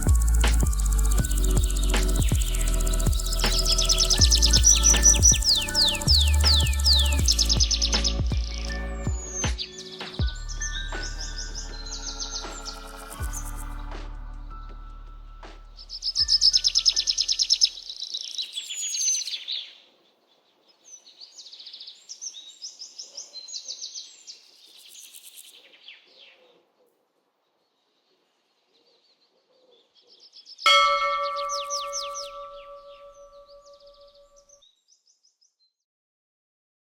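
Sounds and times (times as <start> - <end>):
small birds trilling and chirping: 0.0 - 13.9, 16.0 - 33.8, 34.4 - 35.7
music with held tones: 0.0 - 17.1.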